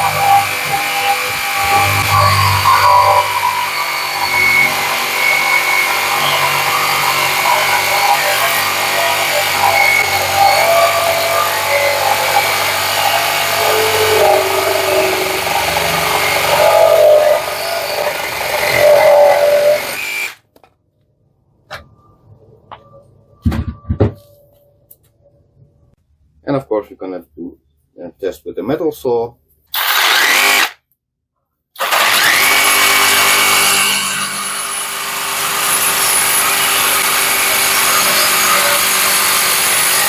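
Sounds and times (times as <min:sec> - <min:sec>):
reciprocating saw cutting wood: 0:00.0 - 0:20.5, 0:29.8 - 0:30.8, 0:31.8 - 0:40.0.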